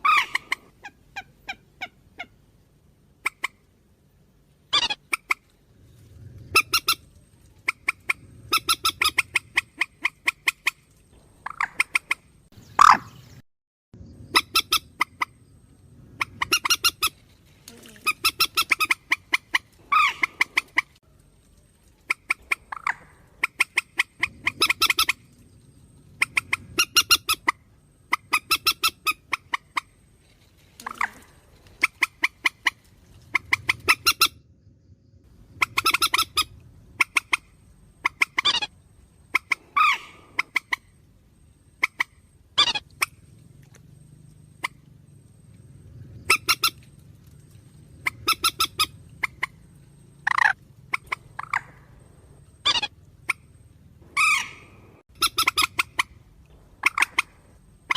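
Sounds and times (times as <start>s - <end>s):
harsh cackling bird calls: 0.0s - 2.4s, 3.2s - 3.7s, 4.7s - 5.5s, 6.5s - 13.2s, 14.2s - 15.5s, 16.1s - 21.0s, 22.0s - 25.4s, 26.1s - 30.0s, 30.8s - 34.4s, 35.5s - 41.0s, 41.7s - 43.5s, 46.2s - 57.9s
wailing bird notes: 46.2s - 57.9s.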